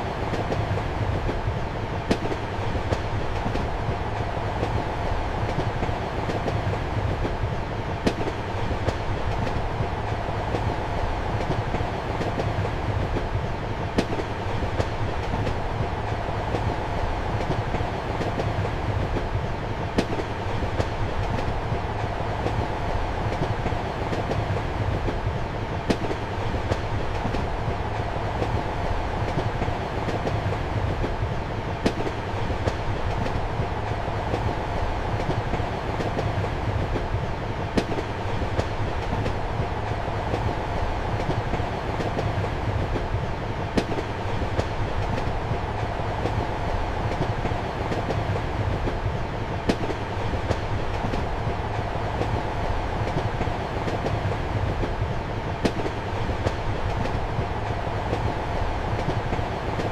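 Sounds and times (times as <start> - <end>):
train rumble and hum: 0.0 - 59.9.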